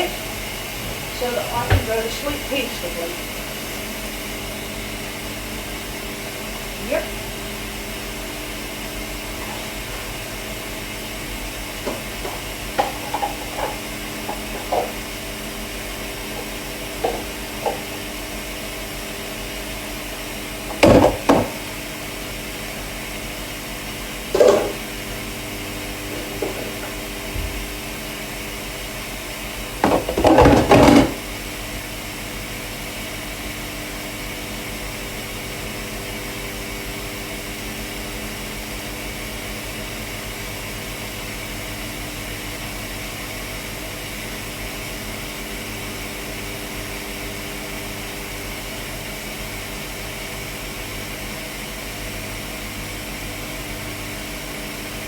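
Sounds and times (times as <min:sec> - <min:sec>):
steady hum: 0:00.0 - 0:31.9
dishes clinking and clattering: 0:09.4 - 0:10.2, 0:11.9 - 0:15.1, 0:16.3 - 0:18.1, 0:24.4 - 0:24.8, 0:29.8 - 0:31.2.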